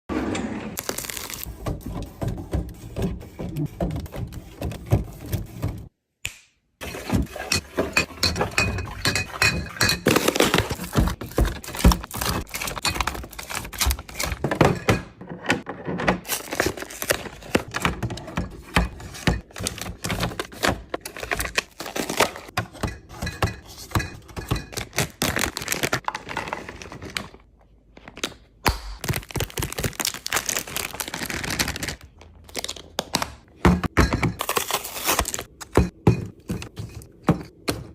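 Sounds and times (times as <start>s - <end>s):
plastic crinkling: 29.0s - 33.0s.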